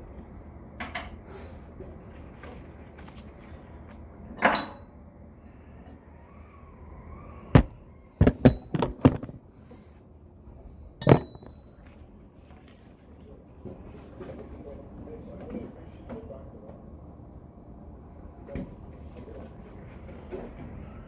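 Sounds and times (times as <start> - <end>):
metal clanging: 11.0 - 11.7.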